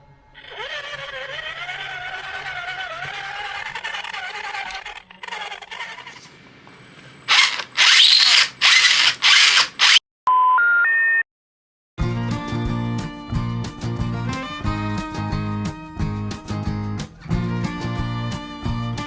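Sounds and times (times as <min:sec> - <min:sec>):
electric motor and gears whining: 0:00.4 - 0:10.0
harsh noise bursts: 0:07.3 - 0:10.0
music: 0:12.0 - 0:19.0.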